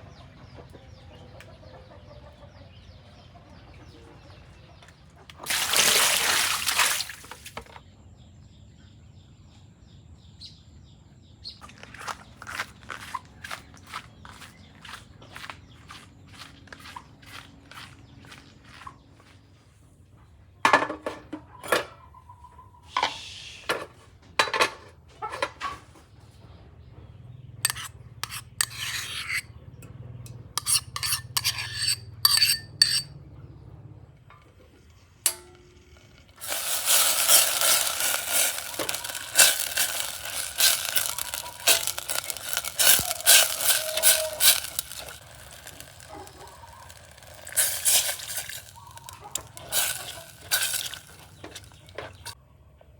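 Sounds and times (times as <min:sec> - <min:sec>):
metal utensils scraping a pan: 0:27.7 - 0:29.6, 0:30.6 - 0:33.1, 0:35.3 - 0:52.4
stirring clicks: 0:36.0 - 0:52.4
food sizzling in a pan: 0:36.4 - 0:52.4.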